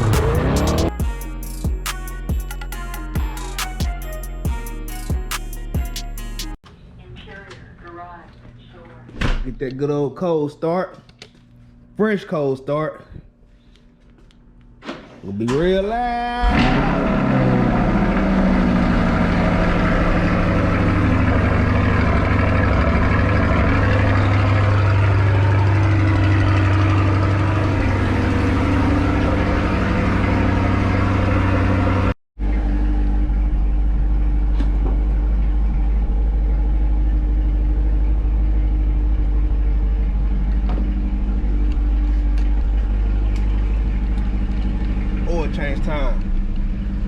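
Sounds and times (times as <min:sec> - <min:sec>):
car engine idling: 0:00.0 - 0:01.0, 0:16.8 - 0:47.0.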